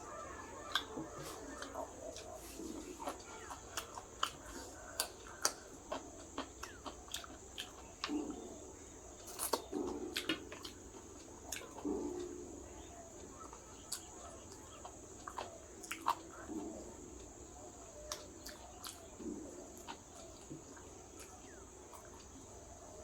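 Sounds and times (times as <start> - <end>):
closed-mouth murmurs: 0.0 - 6.9
chewing with wet mouth clicks: 0.5 - 22.8.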